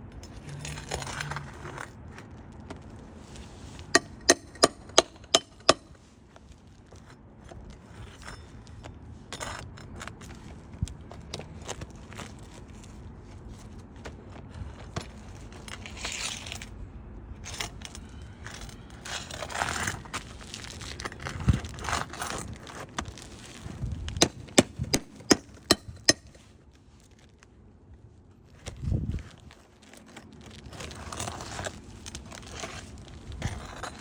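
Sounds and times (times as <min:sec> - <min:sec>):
tools scraping roof shingles: 0:02.7 - 0:06.2, 0:18.9 - 0:26.6, 0:29.5 - 0:34.0.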